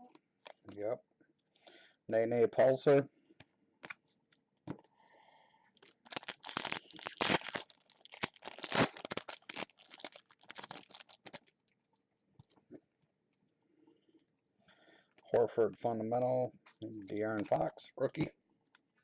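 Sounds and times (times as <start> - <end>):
wrapper crinkling and tearing: 5.8 - 11.6.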